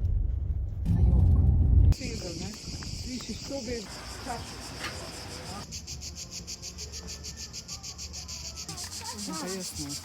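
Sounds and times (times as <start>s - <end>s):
cicadas buzzing: 2.0s - 10.0s.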